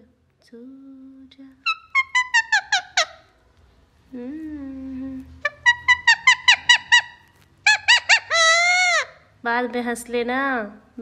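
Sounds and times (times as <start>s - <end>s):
parrot laughing: 1.6s - 3.3s, 5.4s - 9.2s.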